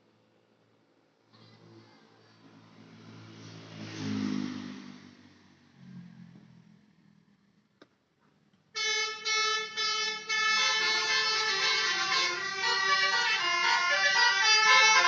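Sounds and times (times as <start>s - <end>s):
multi-tone musical bus horn: 8.8s - 15.0s.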